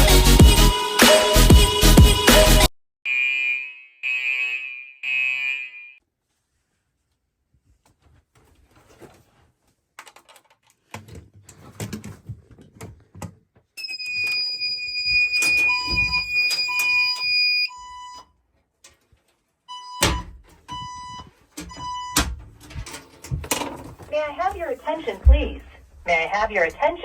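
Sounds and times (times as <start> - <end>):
high-pitched alarm tone: 3.1 - 6.0, 13.8 - 17.7
knocks and handling noises: 7.6 - 13.7, 20.0 - 27.0.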